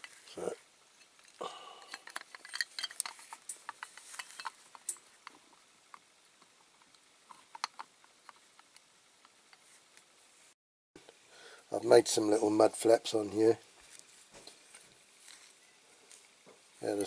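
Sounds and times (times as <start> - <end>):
metal model parts clicking: 1.8 - 5.0.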